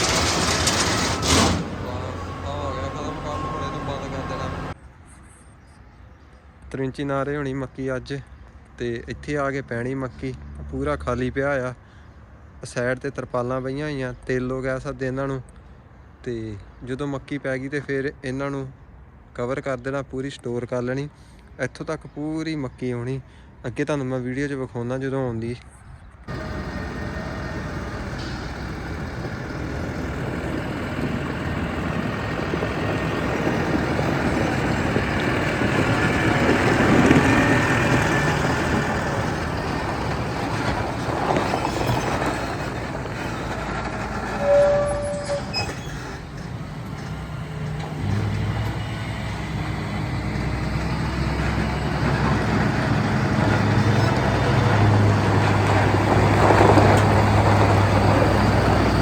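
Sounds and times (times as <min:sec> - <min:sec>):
deep steady engine hum: 0:00.0 - 0:04.8, 0:26.3 - 0:59.0
heavy farm vehicle engine running: 0:00.0 - 0:04.8, 0:26.3 - 0:59.0
short tone: 0:01.2 - 0:04.8, 0:44.4 - 0:45.7.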